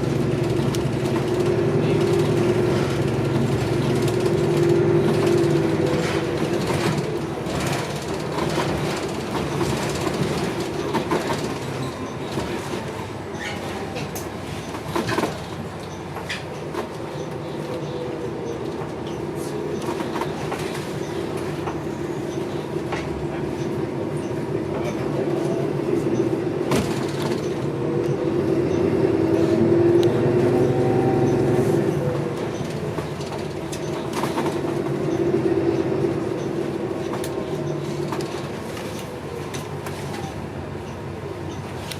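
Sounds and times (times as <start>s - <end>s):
bus engine hum: 0.0s - 41.9s
rattles and knocks from bus body: 0.1s - 16.9s, 26.6s - 27.7s, 32.4s - 35.2s.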